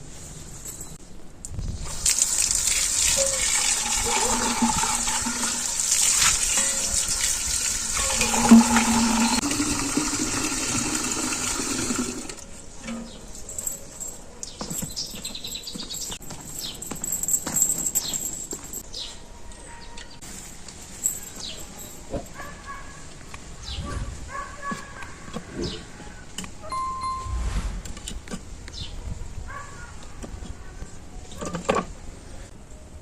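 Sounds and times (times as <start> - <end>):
water pouring into a vessel: 2.0 - 12.4.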